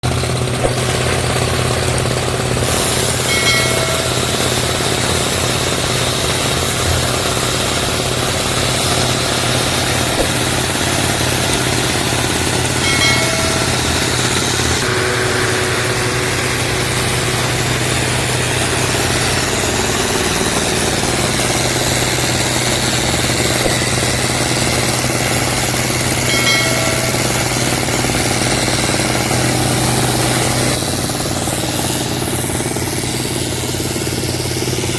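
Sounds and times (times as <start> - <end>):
diesel engine running: 0.0 - 34.9
brief high tone: 10.2 - 20.5.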